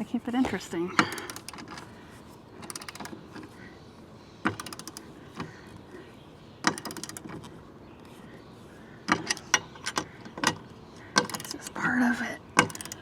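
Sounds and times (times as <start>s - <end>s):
hardware clicking and rattling: 0.4s - 2.0s, 2.6s - 3.6s, 4.4s - 5.5s, 6.6s - 7.6s, 9.1s - 13.0s.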